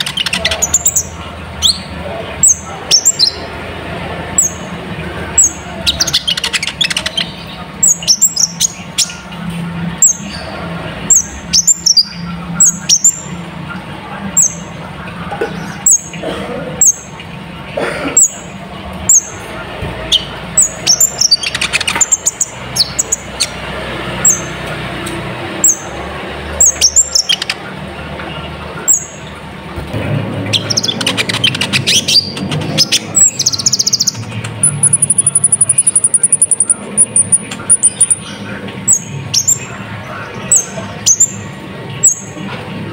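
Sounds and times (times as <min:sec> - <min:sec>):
sunbird singing high chirps: 0:30.6 - 0:39.7.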